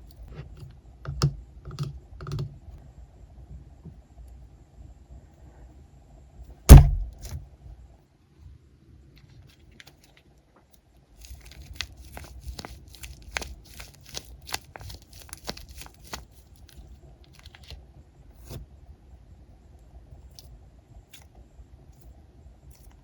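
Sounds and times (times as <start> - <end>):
squishy toys crinkling and clicking: 11.2 - 17.8.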